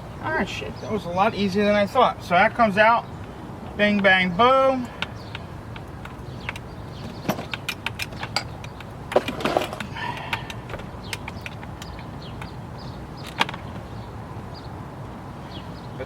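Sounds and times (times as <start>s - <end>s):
hand tools and metal parts clicking: 5.3s - 12.6s.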